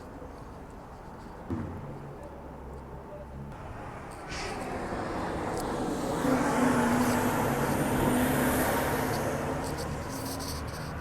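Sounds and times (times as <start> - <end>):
vehicle driving past: 3.6 - 11.0.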